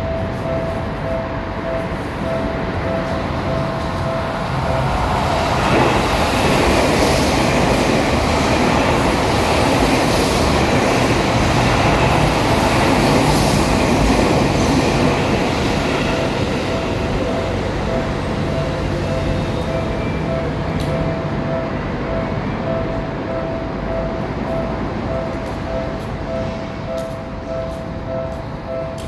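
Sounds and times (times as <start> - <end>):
train wheels rumbling on rails: 0.0 - 29.0
two-tone crossing bell: 0.0 - 29.0.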